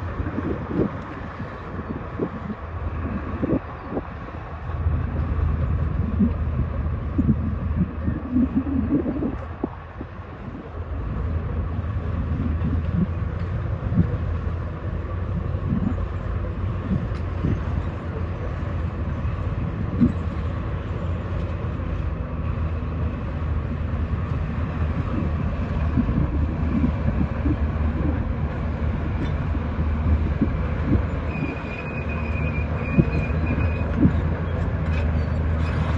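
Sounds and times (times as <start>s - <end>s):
diesel machinery rumbling: 0.0s - 35.9s
high squeal: 31.2s - 34.2s.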